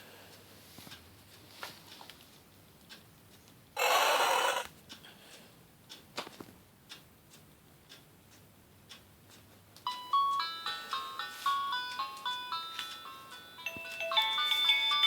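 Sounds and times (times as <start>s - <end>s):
book handling clicks and taps: 6.2s - 6.6s.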